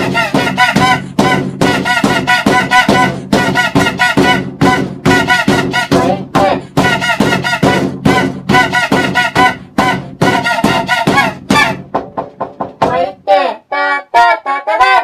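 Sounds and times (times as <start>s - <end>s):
plucked notes over a beat: 0.0s - 13.4s.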